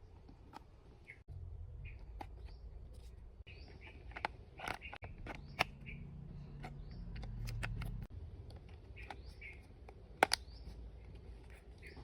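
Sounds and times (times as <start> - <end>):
plastic toy clicks and knocks: 6.6 - 10.5.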